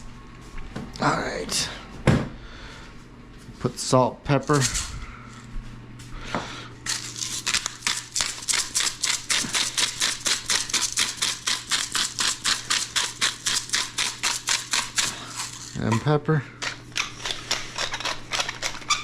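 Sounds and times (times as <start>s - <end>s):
spice grinder ratcheting scrapes: 6.9s - 19.0s.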